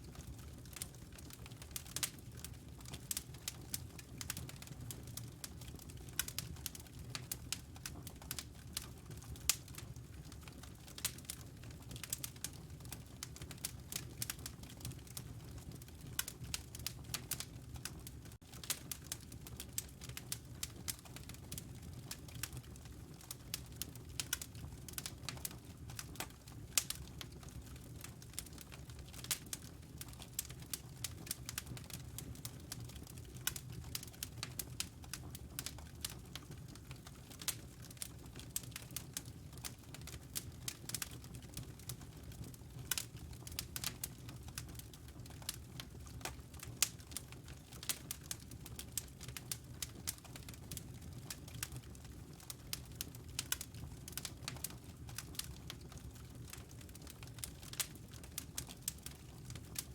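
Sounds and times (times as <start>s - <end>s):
low rumble of burning logs: 0.0s - 59.9s
fire pops and snaps: 16.1s - 59.9s.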